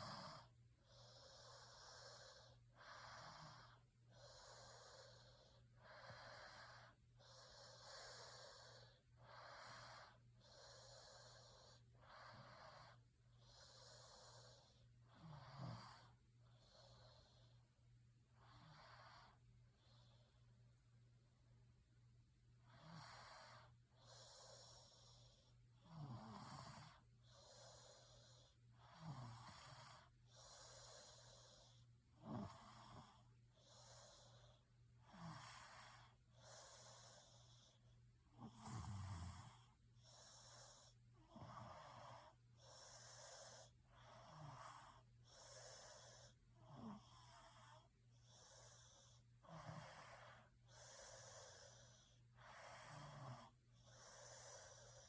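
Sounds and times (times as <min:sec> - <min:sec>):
person snoring: 0:22.7 - 0:55.0.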